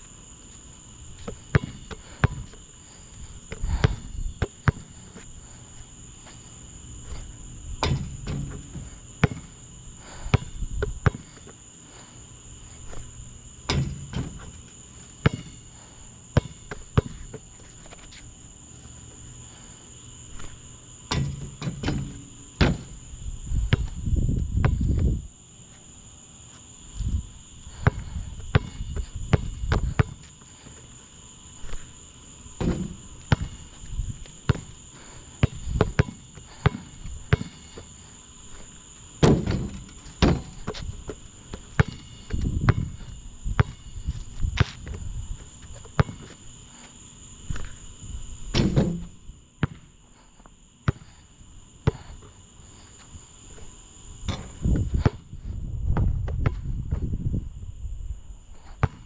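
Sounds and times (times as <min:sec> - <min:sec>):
crickets chirring: 0:00.0 - 0:59.0
basketball bouncing: 0:01.2 - 0:02.5, 0:03.5 - 0:05.0, 0:07.8 - 0:09.6, 0:10.3 - 0:11.4, 0:15.2 - 0:15.6, 0:21.1 - 0:23.0, 0:27.8 - 0:30.3, 0:32.6 - 0:33.8, 0:34.5 - 0:34.8, 0:35.4 - 0:37.9, 0:39.2 - 0:43.0, 0:43.6 - 0:43.9, 0:45.9 - 0:46.3, 0:48.5 - 0:49.9.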